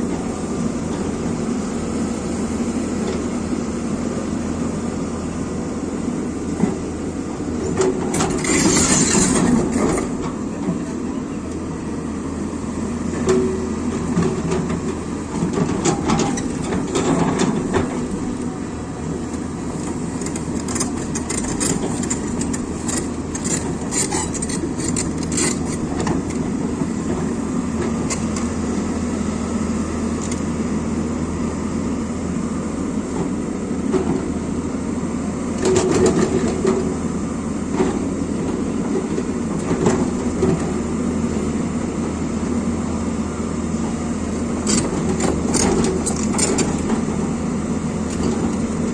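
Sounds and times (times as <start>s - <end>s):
excavator diesel engine: 0.0s - 48.9s
machine clanks and rattles: 7.6s - 10.4s, 13.2s - 18.1s, 19.8s - 26.4s, 44.6s - 47.2s.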